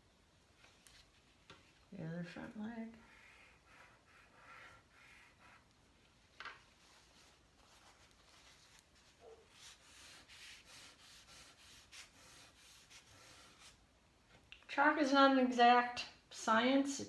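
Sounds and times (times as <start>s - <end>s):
chalk rubbing on paper: 3.0s - 5.7s, 6.9s - 13.8s.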